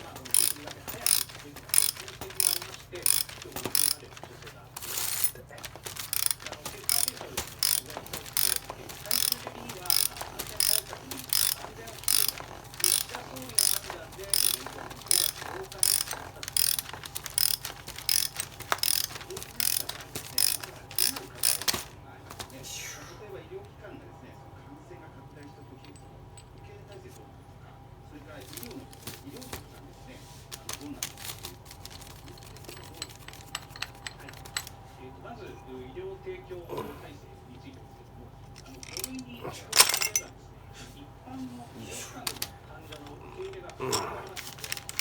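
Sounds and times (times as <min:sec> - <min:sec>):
ratchet wrench clicking: 0:00.0 - 0:21.9, 0:38.6 - 0:39.2.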